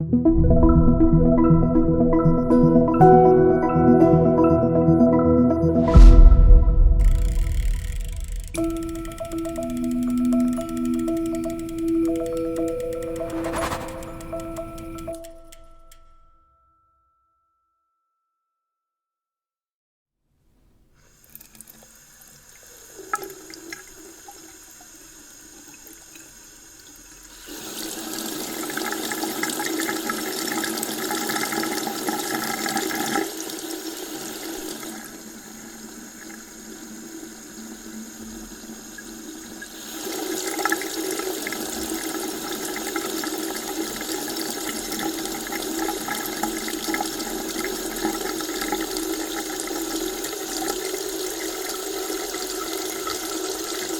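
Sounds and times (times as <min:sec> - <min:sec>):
water running from tap: 0:21.2 - 0:37.9, 0:38.5 - 0:53.9.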